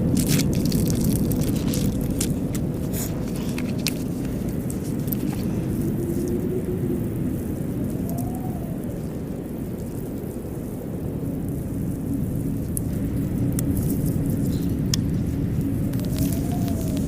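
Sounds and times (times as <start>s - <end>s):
deep steady rumbling: 0.0s - 17.0s
sharp crackles: 0.0s - 17.0s.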